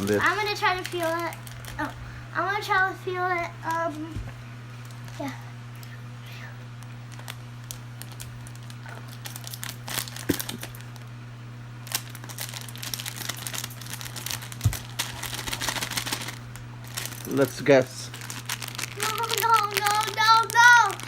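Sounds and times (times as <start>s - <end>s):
plastic bag crinkling: 0.0s - 2.0s, 4.8s - 5.4s, 6.8s - 11.1s, 11.8s - 21.0s.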